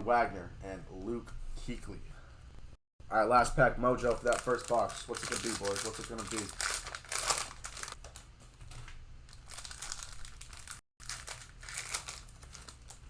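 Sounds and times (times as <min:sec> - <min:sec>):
plastic wrapper crinkling: 0:04.0 - 0:13.0.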